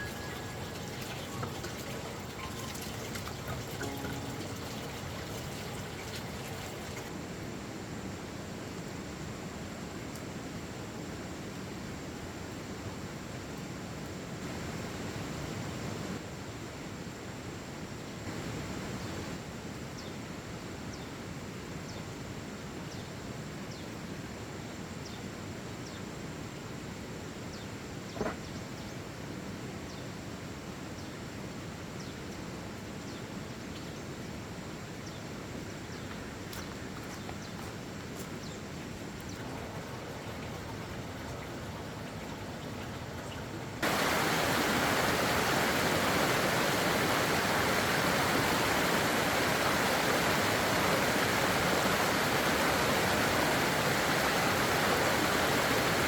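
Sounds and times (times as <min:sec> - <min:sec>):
faint high chirps: 0:00.0 - 0:05.4
outdoor background noise: 0:00.0 - 0:56.0.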